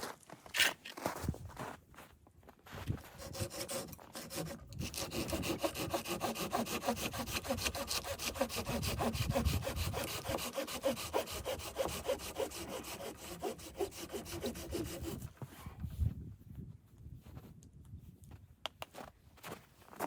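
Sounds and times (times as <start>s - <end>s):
hand saw cutting wood: 3.0s - 15.3s.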